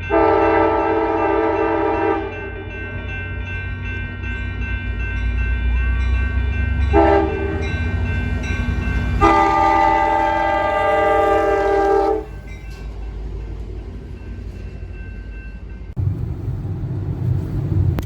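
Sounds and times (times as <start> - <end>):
multi-tone horn blasts: 0.0 - 2.5, 6.9 - 7.7, 9.2 - 12.4
steady low rumble: 12.8 - 18.0.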